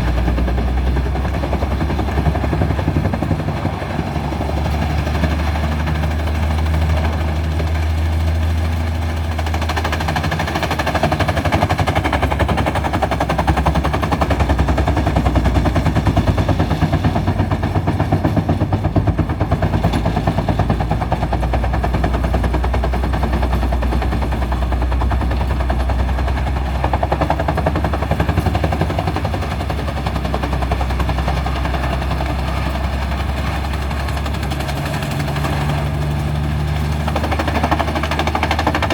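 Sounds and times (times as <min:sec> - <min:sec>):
heavy diesel engines running: 0:00.0 - 0:38.9
wood chipper chipping logs: 0:00.0 - 0:38.9.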